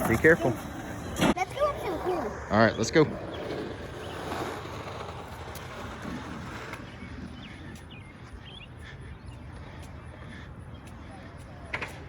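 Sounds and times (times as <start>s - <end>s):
outdoor background noise: 0.0s - 12.0s.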